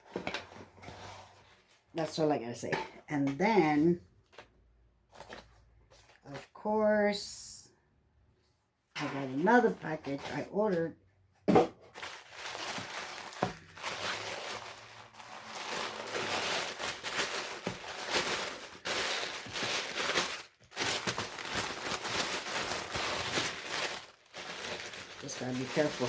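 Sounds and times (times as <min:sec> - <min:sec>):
packaging crinkling: 0:11.9 - 0:26.0.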